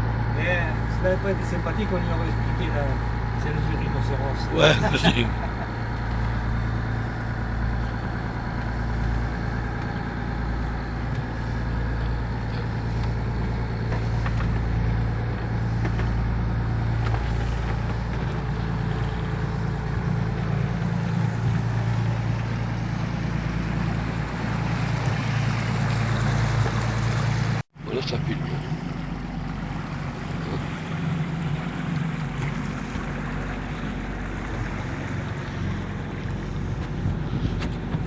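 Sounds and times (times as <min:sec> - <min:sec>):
boat engine droning: 0:00.0 - 0:38.0
wind: 0:00.0 - 0:38.0
water rushing: 0:22.6 - 0:37.0.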